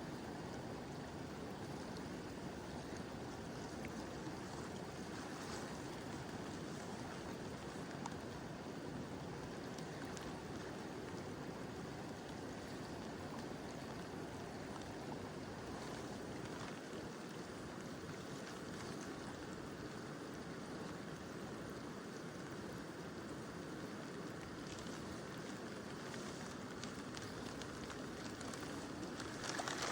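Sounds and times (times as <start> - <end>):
light rain falling: 0.0 - 29.9
river water rushing: 23.6 - 29.9.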